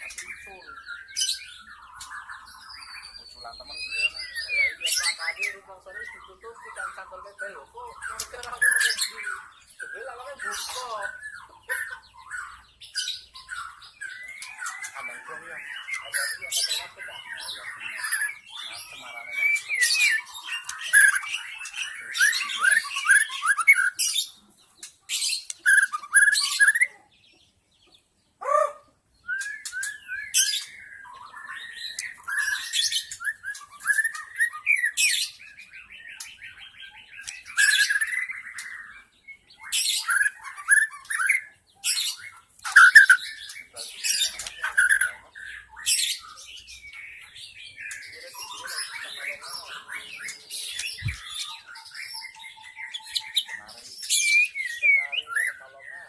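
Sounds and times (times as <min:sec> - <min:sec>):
bird singing whistled phrases: 0:00.0 - 0:06.3, 0:19.3 - 0:24.2, 0:25.4 - 0:26.9, 0:28.4 - 0:53.5, 0:54.1 - 0:55.6
bird chattering notes: 0:00.0 - 0:27.0, 0:28.4 - 0:56.0.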